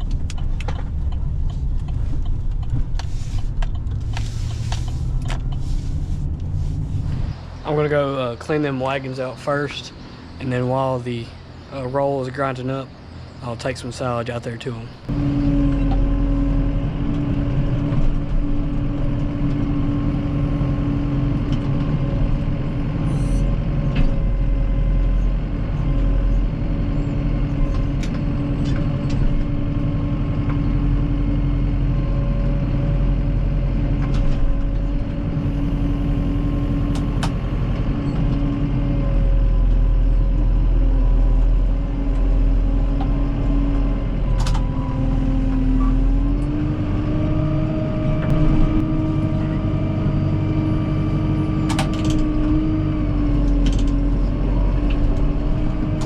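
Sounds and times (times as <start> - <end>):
vehicle engine humming: 0.0 - 56.0.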